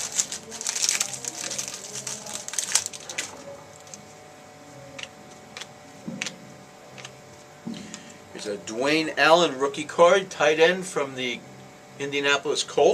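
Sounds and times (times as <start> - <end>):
card pack wrapper crinkling: 0.0 - 4.1
cards clicking: 7.0 - 7.2.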